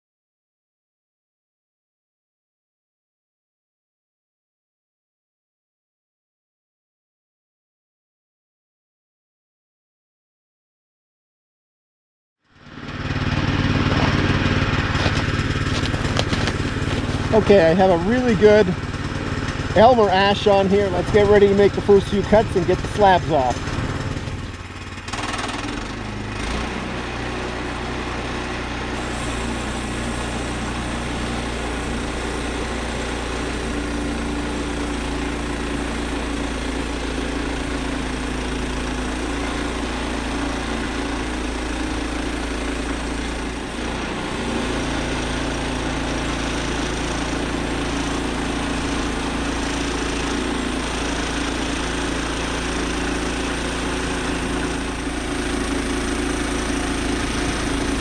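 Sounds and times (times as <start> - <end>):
small gasoline engine running: 12.4 - 58.0.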